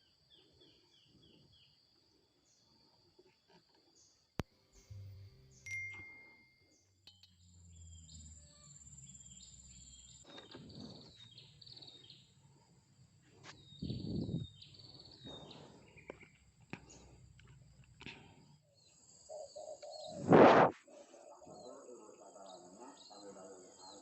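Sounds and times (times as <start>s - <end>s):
small birds chirping: 0.0s - 24.0s
low hum: 4.4s - 10.2s
high insect buzz: 7.4s - 10.7s
brief rushes of noise: 20.1s - 20.8s.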